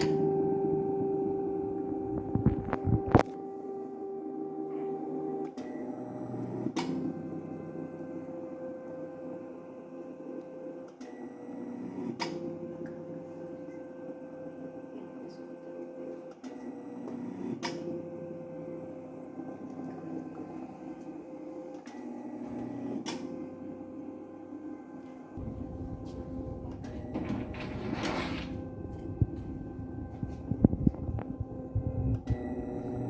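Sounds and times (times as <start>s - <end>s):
motor hum: 16.6s - 33.0s.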